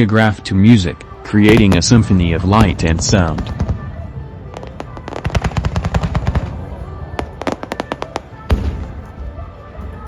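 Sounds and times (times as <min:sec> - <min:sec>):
fireworks popping: 0:01.4 - 0:09.2.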